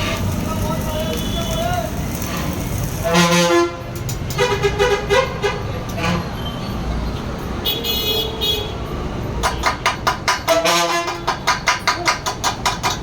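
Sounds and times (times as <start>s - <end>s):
traffic rumble: 0.0s - 13.0s
vehicle horns honking: 0.9s - 2.0s, 3.0s - 6.8s, 7.6s - 8.9s, 10.5s - 11.4s.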